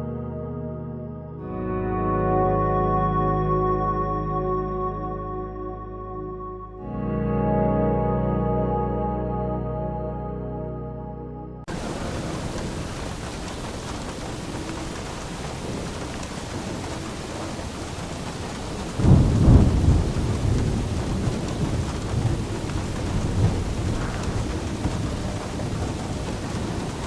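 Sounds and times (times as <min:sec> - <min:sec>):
heavy rain: 0:11.7 - 0:27.0
thunder rumbling: 0:11.7 - 0:27.0.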